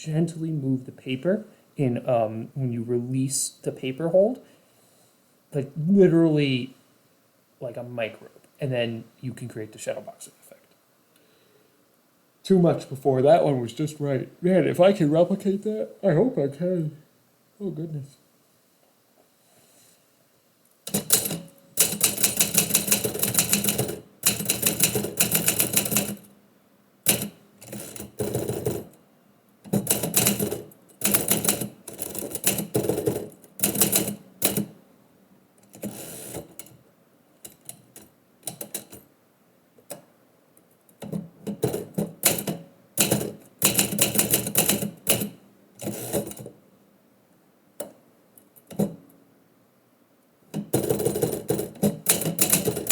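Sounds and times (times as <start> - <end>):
typewriter keys clacking: 20.9 - 26.3, 27.1 - 29.0, 29.7 - 34.7, 41.0 - 46.5, 50.6 - 52.9.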